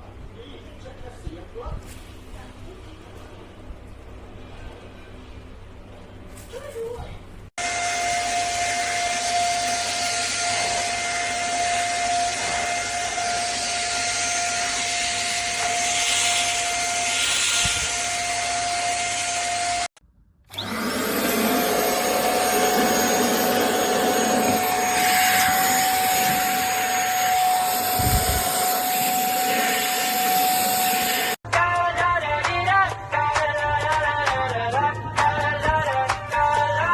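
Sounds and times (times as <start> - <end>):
vacuum cleaner running: 7.6 - 19.9, 20.5 - 31.4.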